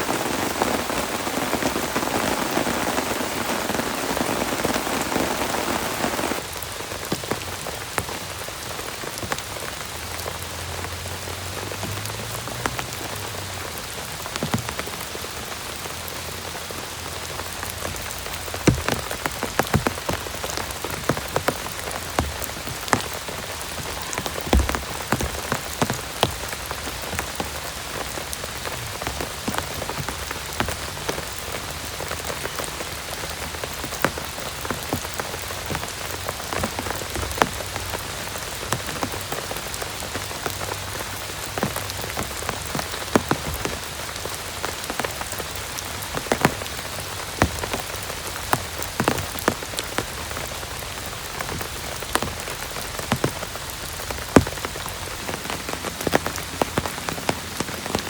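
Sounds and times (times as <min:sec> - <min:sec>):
heavy rain hiss: 0:00.0 - 0:58.0
sharp raindrop impacts: 0:00.0 - 0:58.0.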